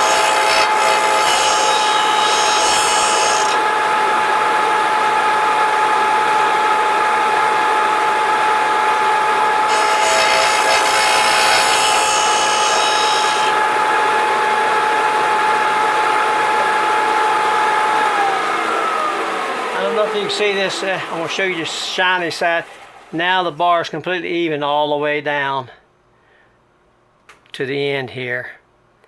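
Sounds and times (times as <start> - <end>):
metal grinding hiss: 0.0 - 3.6
grinding machine whine: 0.0 - 23.6.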